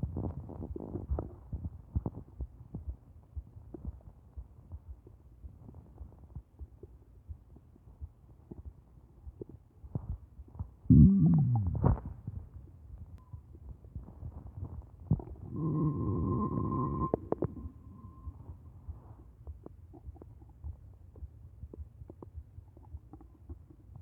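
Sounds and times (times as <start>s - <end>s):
stomach gurgling and rumbling: 0.0s - 24.0s
loud wavering pitched sound: 15.5s - 18.4s.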